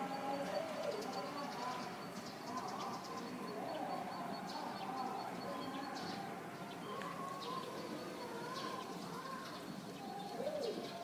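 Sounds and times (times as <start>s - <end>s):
doves cooing: 0.0s - 1.8s, 2.5s - 11.0s
small birds chirping: 0.0s - 11.0s.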